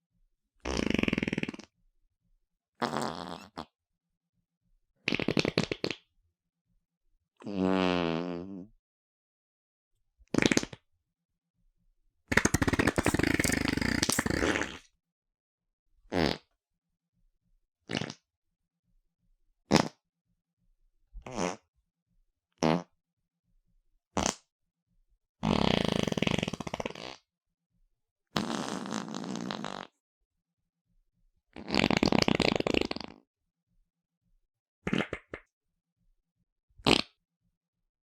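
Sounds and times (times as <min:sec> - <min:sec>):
fart sound effects: 0:12.3 - 0:14.8.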